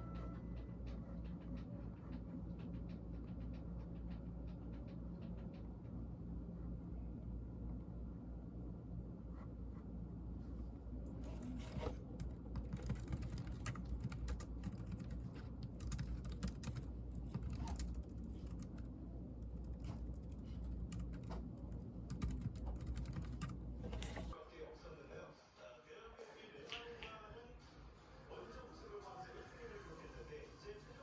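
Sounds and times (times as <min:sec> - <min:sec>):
low steady hum: 0:00.0 - 0:24.4
keyboard keys clicking: 0:12.2 - 0:18.9, 0:22.1 - 0:24.3.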